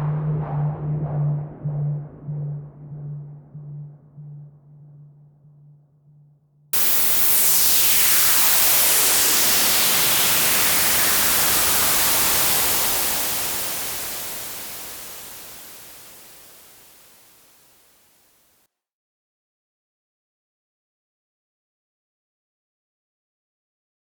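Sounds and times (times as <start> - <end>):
whoosh falling in pitch: 6.8 - 17.2
hissing static noise: 6.8 - 17.8.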